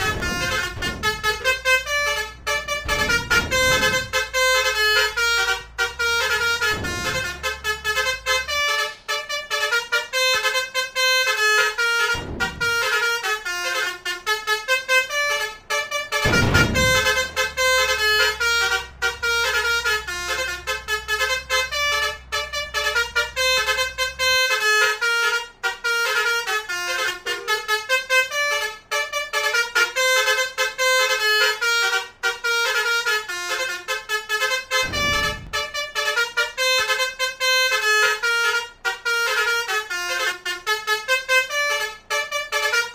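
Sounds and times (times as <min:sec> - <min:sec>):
low thumps: 0:00.0 - 0:08.9, 0:12.1 - 0:13.2, 0:16.1 - 0:24.5, 0:34.7 - 0:36.2
multi-trumpet bus horn melody: 0:00.0 - 0:42.9
low rumble: 0:34.8 - 0:35.9.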